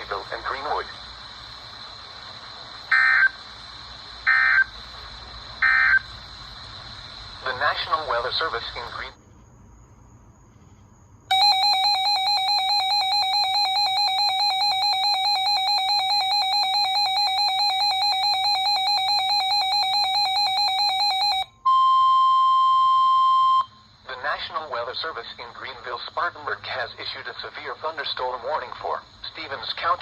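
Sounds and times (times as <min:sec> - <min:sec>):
warbling electronic alarm: 0:02.9 - 0:03.4, 0:04.2 - 0:04.7, 0:05.6 - 0:06.1, 0:11.3 - 0:23.7.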